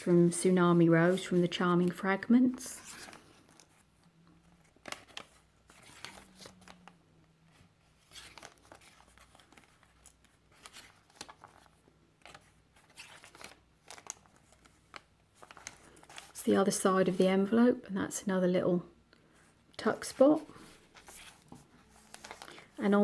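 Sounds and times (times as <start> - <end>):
paper pages rustling and clicking: 2.6 - 16.5, 19.9 - 23.0.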